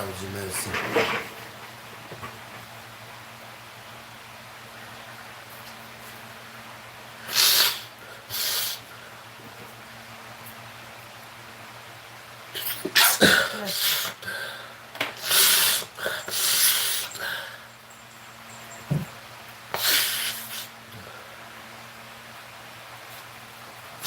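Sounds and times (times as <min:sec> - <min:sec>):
man sneezing: 0:12.6 - 0:14.2.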